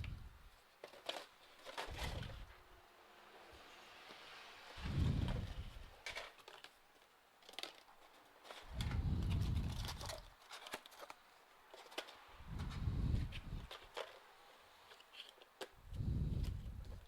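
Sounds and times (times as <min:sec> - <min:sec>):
plastic packaging rustling: 0:00.0 - 0:02.6, 0:04.8 - 0:15.8.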